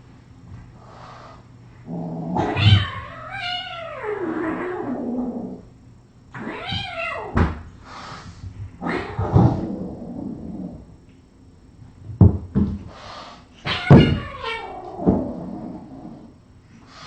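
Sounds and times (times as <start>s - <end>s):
cat yowling: 13.6s - 14.9s.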